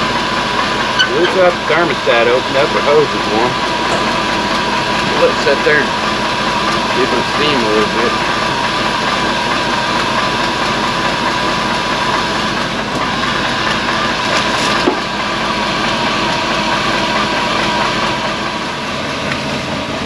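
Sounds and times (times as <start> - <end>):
engine idling with rattle: 0.0 - 20.0.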